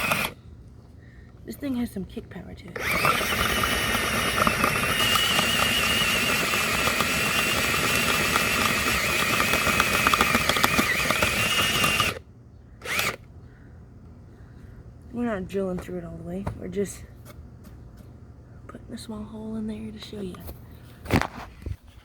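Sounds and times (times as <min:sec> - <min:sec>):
cordless drill boring: 0:00.0 - 0:00.4, 0:02.8 - 0:12.2, 0:12.8 - 0:13.2.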